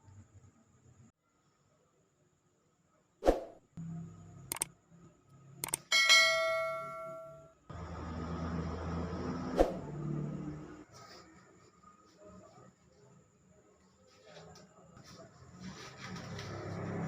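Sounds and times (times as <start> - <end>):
clicks: 4.5 - 4.7, 5.6 - 5.9
metal object clanging: 5.9 - 7.4
shuffling noise: 10.8 - 17.0.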